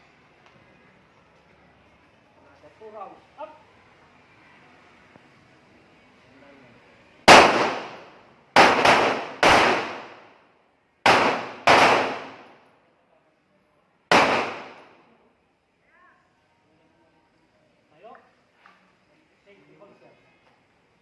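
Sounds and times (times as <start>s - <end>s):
pistol shots with echo: 7.3s - 10.3s, 11.0s - 12.6s, 14.1s - 15.0s.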